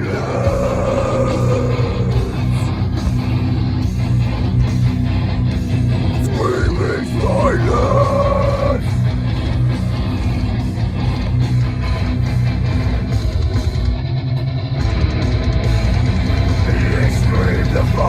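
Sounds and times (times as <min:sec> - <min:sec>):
distorted electric guitar: 0:00.0 - 0:18.0
heavy rock band playing: 0:00.0 - 0:18.0.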